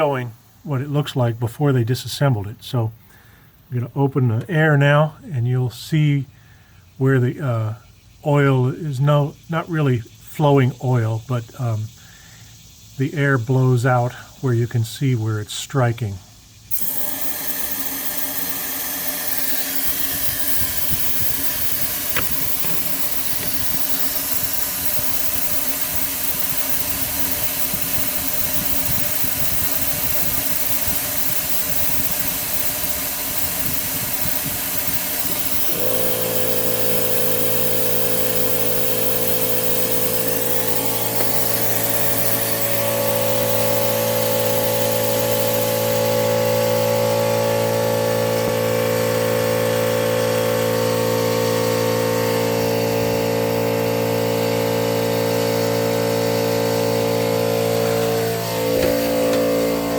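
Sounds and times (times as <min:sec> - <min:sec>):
compressed air hissing: 0:02.7 - 0:03.8, 0:11.8 - 0:13.0, 0:16.4 - 0:59.9
motor hum: 0:16.7 - 0:59.9.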